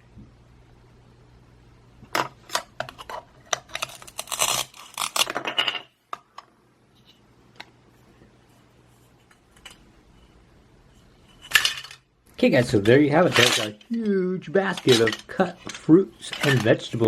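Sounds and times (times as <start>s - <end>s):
velcro ripping: 3.9s - 5.3s.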